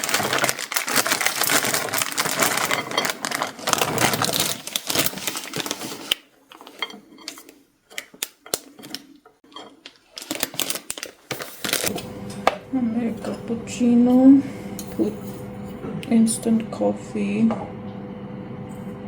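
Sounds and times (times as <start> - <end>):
kitchen utensils and dishes clattering: 0.0 - 16.0.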